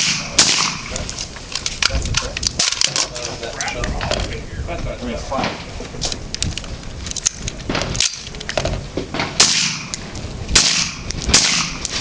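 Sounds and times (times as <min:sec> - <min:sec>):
suppressed rifle shots: 0:00.0 - 0:01.0, 0:09.2 - 0:12.0.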